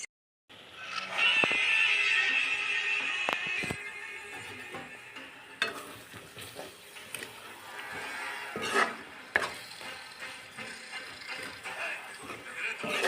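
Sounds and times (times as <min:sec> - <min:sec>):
chicken sizzling in a pan: 0:03.9 - 0:13.0
spoon clinking against pan: 0:04.7 - 0:06.1.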